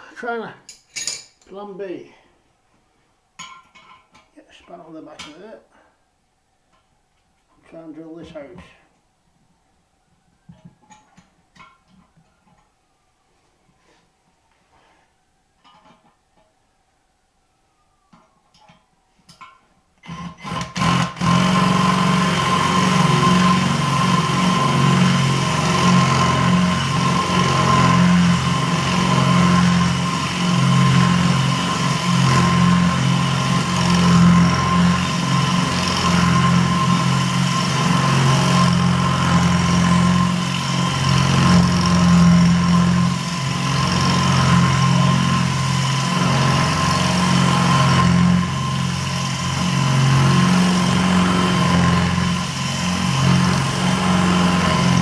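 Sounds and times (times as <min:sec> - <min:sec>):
power drill drilling: 0:20.0 - 0:55.0.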